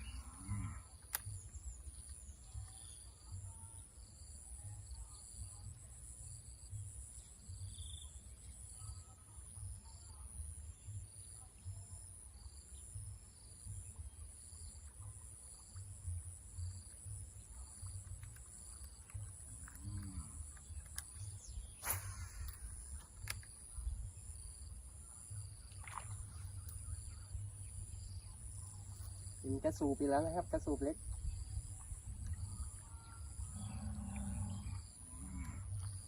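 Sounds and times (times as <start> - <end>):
insects buzzing and chirping: 0.0 - 36.0
sharp click: 20.8 - 23.6.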